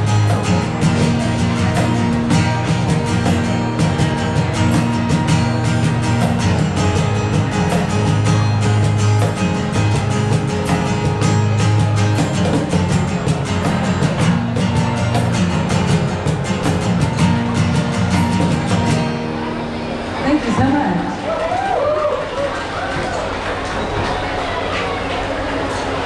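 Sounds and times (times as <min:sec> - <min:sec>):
steady drum beat: 0:00.0 - 0:19.3
bass line: 0:00.0 - 0:21.2
strummed guitar: 0:00.0 - 0:26.0.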